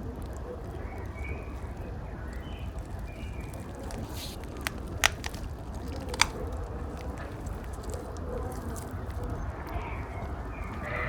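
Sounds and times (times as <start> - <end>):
sharp crunching clicks: 2.8 - 8.9.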